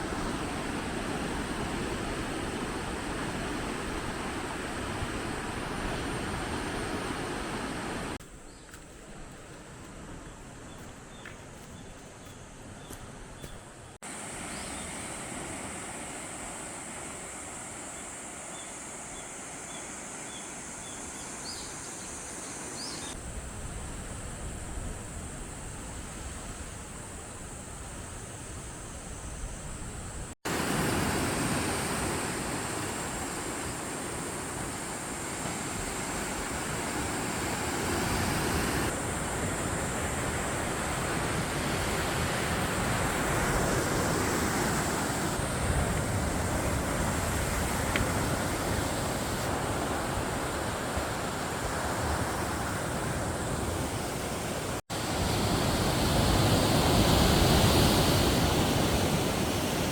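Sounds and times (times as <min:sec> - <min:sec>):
surf washing on rocky shore: 0:14.0 - 0:21.1, 0:30.4 - 0:59.9.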